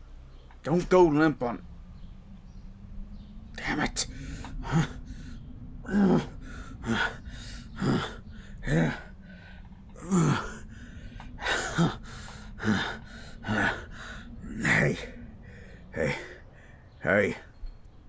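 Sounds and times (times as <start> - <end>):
man panting hard: 6.2 - 16.4.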